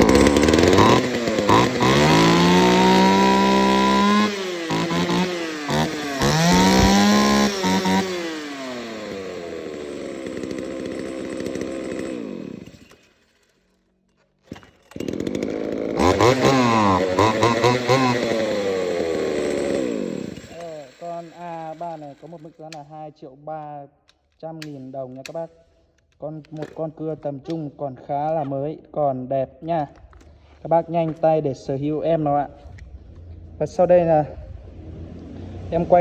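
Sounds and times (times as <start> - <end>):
chainsaw revving and idling: 0.0 - 13.3, 14.9 - 22.9.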